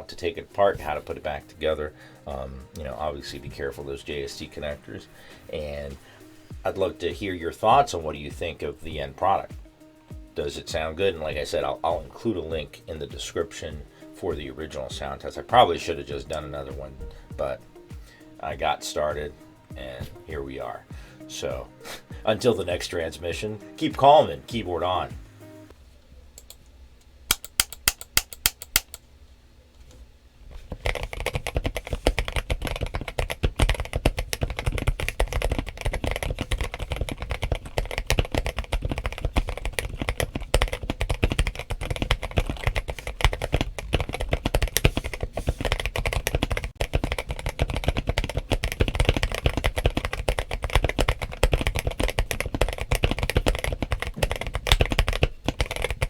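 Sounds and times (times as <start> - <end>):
mechanical keyboard typing: 27.3 - 29.0, 30.7 - 56.0.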